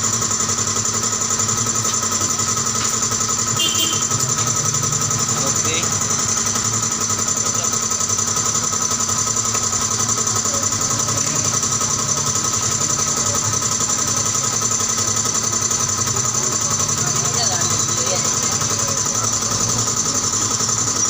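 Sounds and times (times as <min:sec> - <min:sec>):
small motor whining: 0:04.0 - 0:21.0.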